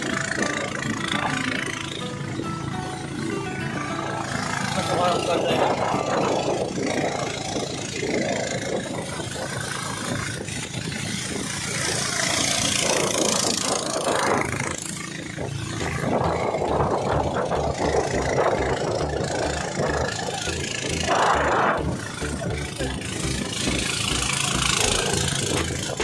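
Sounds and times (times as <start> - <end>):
engine running with pulsing throb: 0.0 - 26.0.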